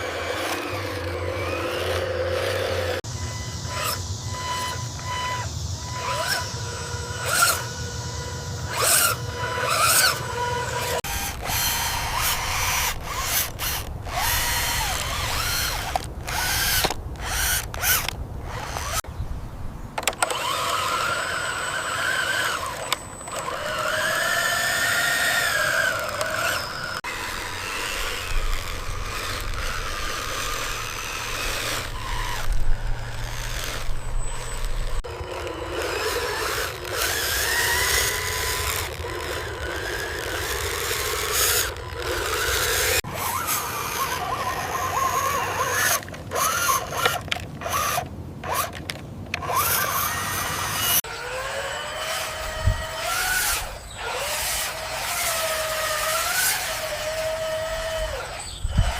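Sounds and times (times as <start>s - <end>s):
small electric motors whining: 0.0s - 19.1s, 20.0s - 58.9s
clicking and scraping: 8.7s - 19.0s, 22.1s - 27.1s, 27.8s - 51.0s.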